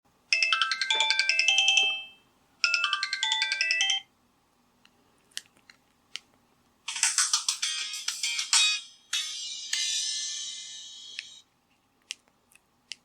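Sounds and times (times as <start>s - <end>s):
phone ringtone melody: 0.3s - 4.1s, 6.9s - 11.4s.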